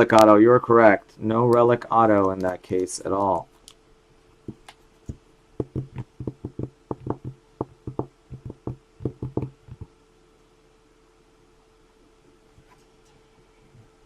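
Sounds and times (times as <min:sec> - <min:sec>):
trading cards tapping on table: 0:04.5 - 0:09.9.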